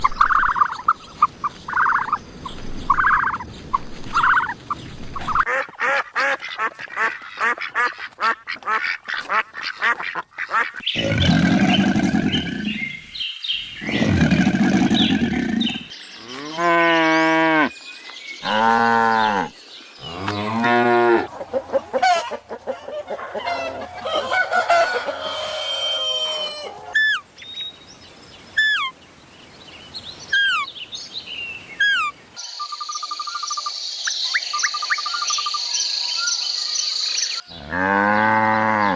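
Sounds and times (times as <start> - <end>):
long wavering calls: 0.0 - 2.2, 2.9 - 3.5, 4.1 - 4.6, 23.6 - 27.4, 28.5 - 29.0, 30.3 - 30.8, 31.8 - 36.4
bird chirping: 0.0 - 5.5, 10.5 - 21.5, 27.0 - 37.7
long low animal calls: 13.8 - 17.7.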